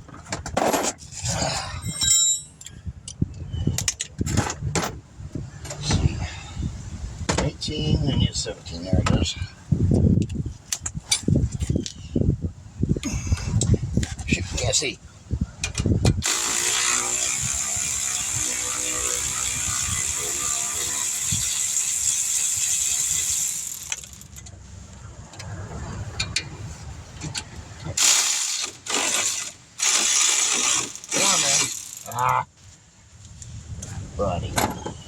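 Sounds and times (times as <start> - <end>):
power tool turning bolt: 16.2 - 24.4, 28.0 - 32.2.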